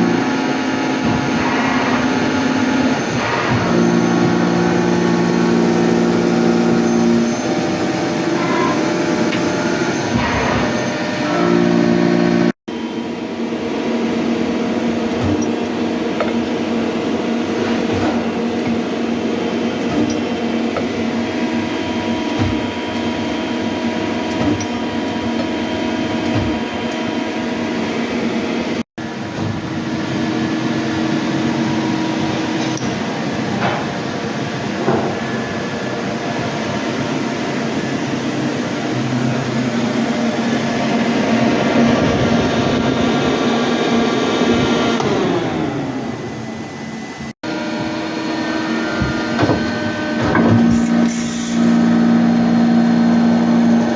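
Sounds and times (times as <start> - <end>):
lathe motor hum and whine: 0.0 - 53.9.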